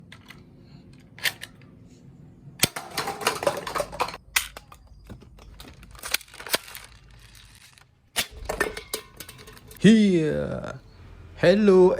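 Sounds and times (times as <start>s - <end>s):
rattling clatter: 2.7s - 4.2s, 8.2s - 9.8s.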